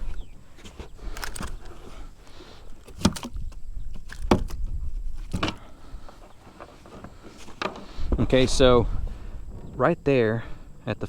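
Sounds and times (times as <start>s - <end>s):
knocks and rattles on plastic kayak: 2.8s - 5.7s
steady low rumble: 7.8s - 11.0s.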